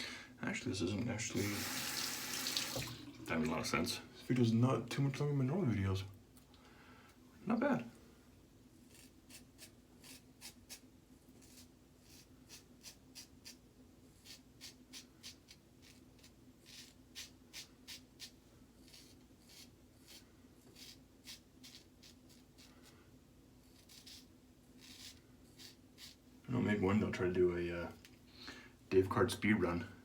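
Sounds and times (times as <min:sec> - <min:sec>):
razor scraping stubble: 0:08.8 - 0:13.6, 0:14.2 - 0:22.9, 0:23.6 - 0:26.2.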